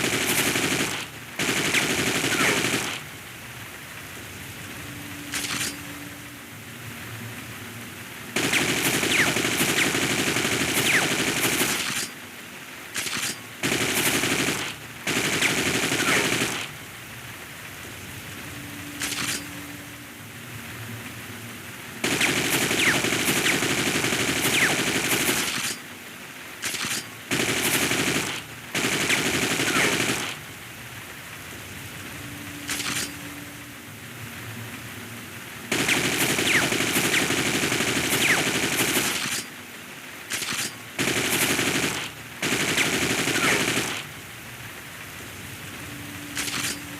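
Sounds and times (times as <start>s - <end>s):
automatic rifle fire: 0.0s - 3.0s, 8.4s - 12.1s, 13.0s - 16.7s, 26.6s - 30.4s, 40.3s - 44.1s
steady hiss: 0.0s - 46.9s.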